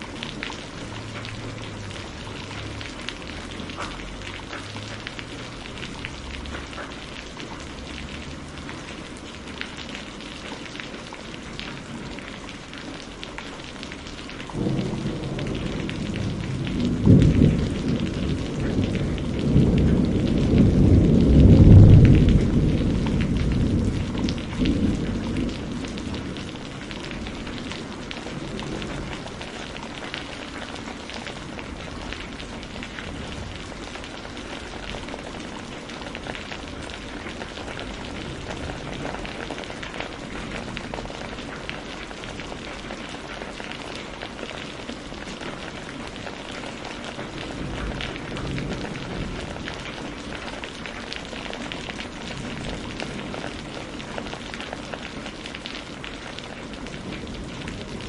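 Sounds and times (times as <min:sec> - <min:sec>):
thunder rumble: 0:00.0 - 0:09.8, 0:14.4 - 0:42.6, 0:47.2 - 0:54.8
steady rain falling: 0:00.0 - 0:58.0.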